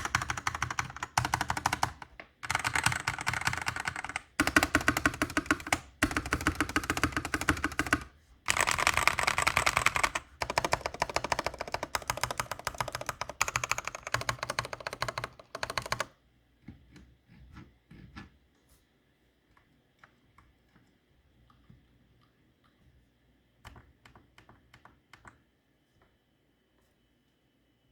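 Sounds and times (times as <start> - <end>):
mechanical keyboard typing: 0.0 - 16.2, 23.6 - 25.4.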